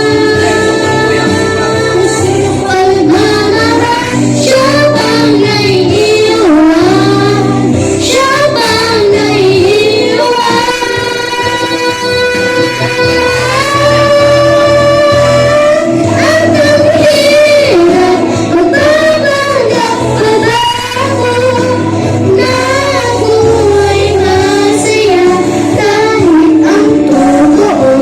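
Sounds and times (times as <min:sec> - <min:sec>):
backing music with bass: 0:00.0 - 0:28.0
person singing slow melody: 0:00.0 - 0:28.0.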